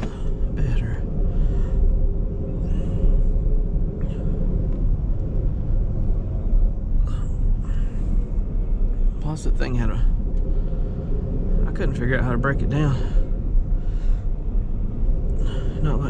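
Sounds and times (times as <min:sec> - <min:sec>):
car engine rumble: 0:00.0 - 0:16.0
tyres on road: 0:00.0 - 0:16.0.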